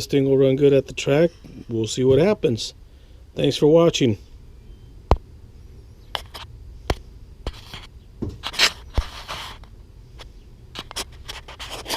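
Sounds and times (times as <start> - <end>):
low steady hum: 0.0 - 11.9
short scraping rubs: 7.4 - 11.9.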